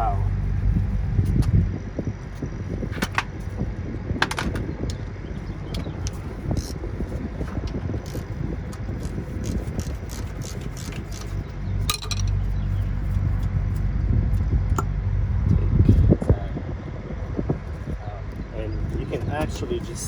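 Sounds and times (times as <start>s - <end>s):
steady low rumble: 0.0s - 20.0s
metal tools clinking: 10.5s - 12.6s.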